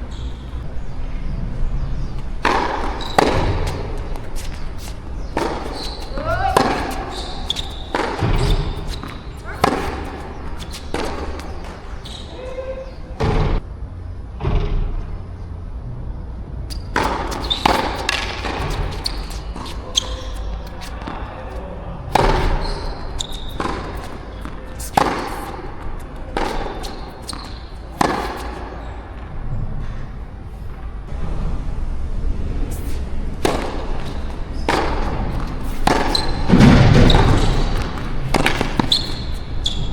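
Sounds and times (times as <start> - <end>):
tennis ball bouncing: 0.0 - 13.6, 14.3 - 15.6, 16.7 - 29.4, 32.7 - 39.9
racket striking tennis ball: 1.6 - 13.6, 16.7 - 29.3, 32.7 - 39.9.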